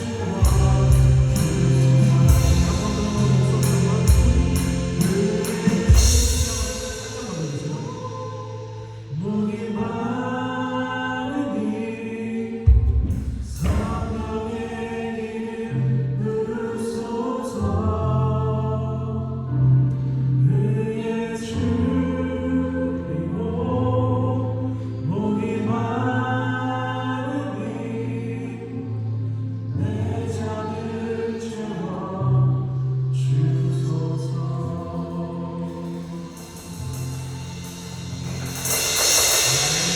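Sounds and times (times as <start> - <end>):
cymbal crash with bass hit: 0.0 - 9.1, 35.8 - 39.9
drums: 0.0 - 9.1, 12.7 - 14.7, 35.0 - 39.9
sustained bass notes: 0.0 - 9.4, 32.3 - 39.9
keyboards: 0.0 - 39.9
voices singing together: 0.0 - 39.9.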